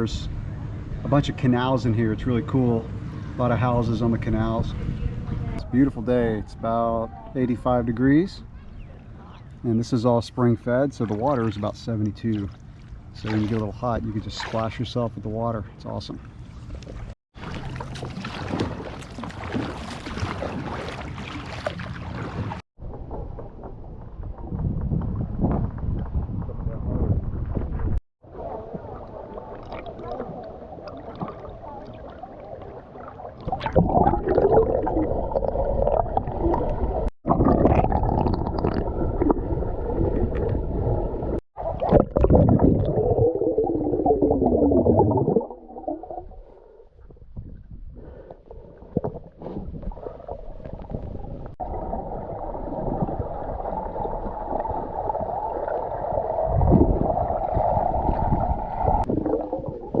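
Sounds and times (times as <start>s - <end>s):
underwater gurgling water: 16.8s - 60.0s.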